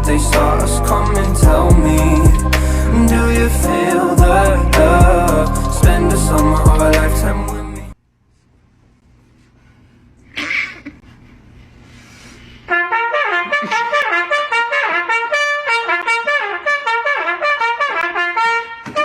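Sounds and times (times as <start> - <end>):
trumpet melody: 0.0 - 7.9, 12.7 - 19.0.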